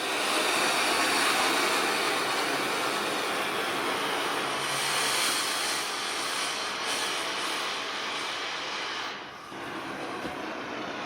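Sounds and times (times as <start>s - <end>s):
firework fountain hissing: 0.0s - 11.0s.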